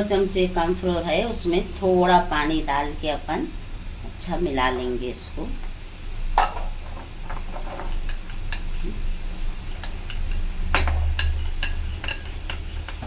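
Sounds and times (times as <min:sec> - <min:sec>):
metal spoon clinking against bowl: 0:09.7 - 0:13.0.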